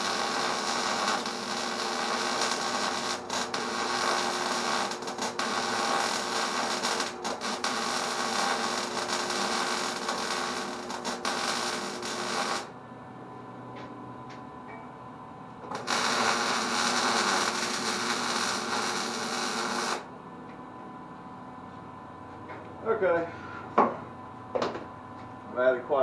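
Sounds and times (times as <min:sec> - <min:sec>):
welding arc crackling buzz: 0:00.0 - 0:12.8, 0:15.6 - 0:20.1
quiet hum: 0:00.0 - 0:25.9.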